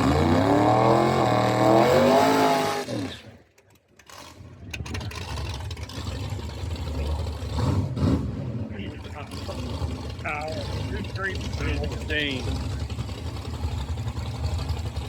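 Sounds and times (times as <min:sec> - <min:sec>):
car engine accelerating: 0:00.0 - 0:03.2, 0:04.1 - 0:15.0
faint rough rumble: 0:03.0 - 0:15.0.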